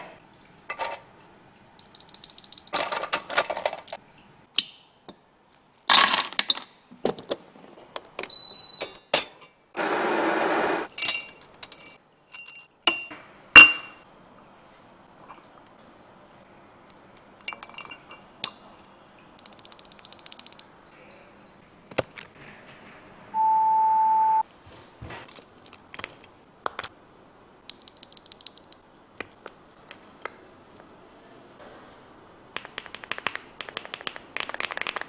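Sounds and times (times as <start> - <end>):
steady beep: 23.4 - 24.4.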